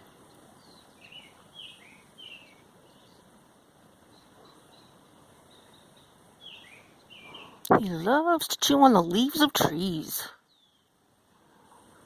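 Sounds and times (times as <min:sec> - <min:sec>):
bird chirping: 0:00.0 - 0:07.8, 0:10.4 - 0:11.0.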